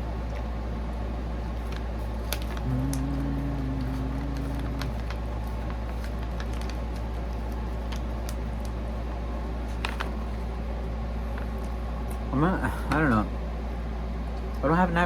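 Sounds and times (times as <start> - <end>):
steady low hum: 0.0 - 15.0
person chewing: 2.6 - 5.5.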